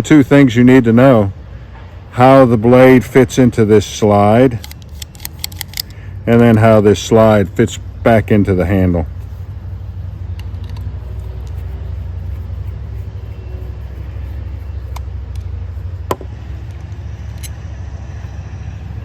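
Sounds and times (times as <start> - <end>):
low background rumble: 1.3 - 19.0
tools clicking and tapping: 4.6 - 6.0.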